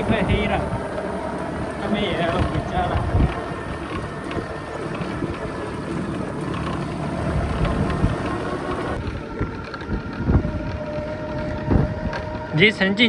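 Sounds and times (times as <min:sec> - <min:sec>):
motorbike riding noise: 0:00.0 - 0:13.0
wind rushing on microphone: 0:00.0 - 0:13.0.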